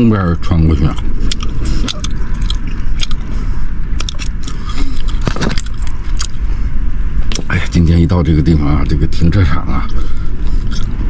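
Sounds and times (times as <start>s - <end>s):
steady low rumble: 0.0s - 11.0s
person chewing and crunching food: 0.8s - 6.4s.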